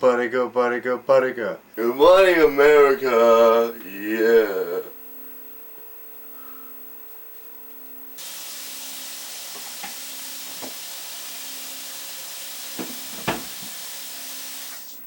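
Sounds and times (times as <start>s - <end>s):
steady hiss: 8.2s - 15.0s.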